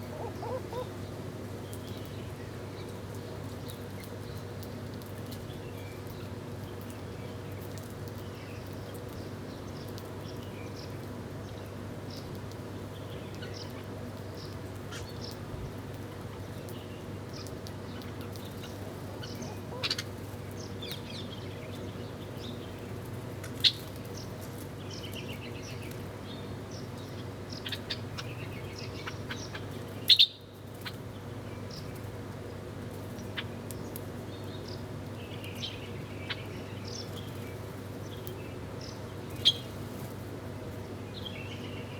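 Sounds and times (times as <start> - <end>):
small birds chirping: 0.0 - 4.6, 16.3 - 41.9
low background hum: 0.0 - 41.9.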